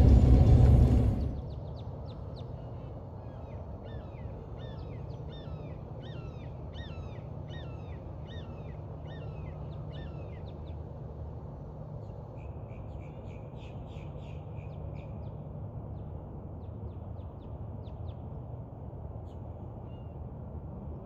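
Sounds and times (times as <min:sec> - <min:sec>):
low rumble: 0:00.0 - 0:01.8.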